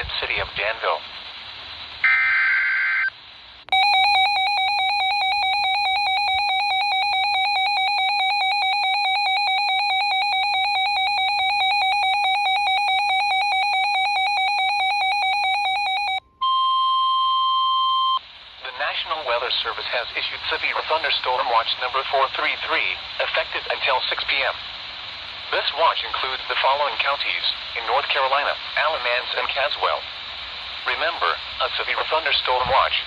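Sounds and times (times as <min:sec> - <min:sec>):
warbling radio alarm: 0:02.0 - 0:03.1, 0:03.7 - 0:17.0.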